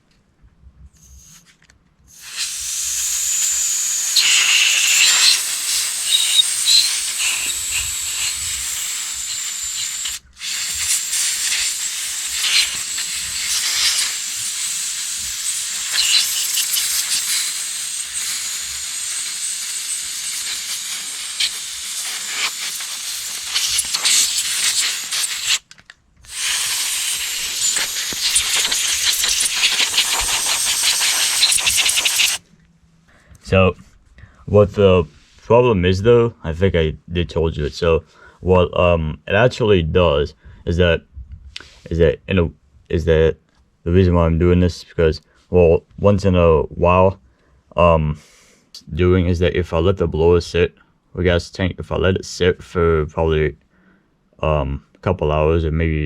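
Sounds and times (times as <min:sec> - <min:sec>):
pressurised jet hissing: 0:02.1 - 0:32.4.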